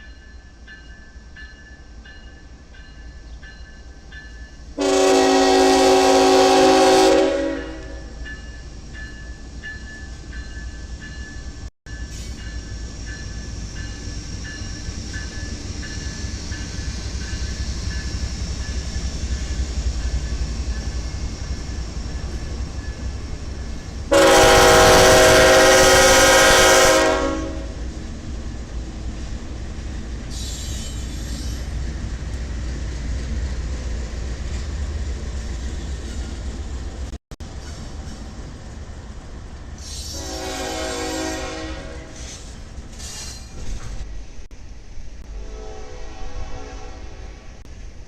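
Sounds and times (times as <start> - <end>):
passing train rumble: 0.0 - 48.0
locomotive horn blowing: 4.8 - 8.2, 24.1 - 27.9, 40.1 - 42.2, 45.3 - 47.6.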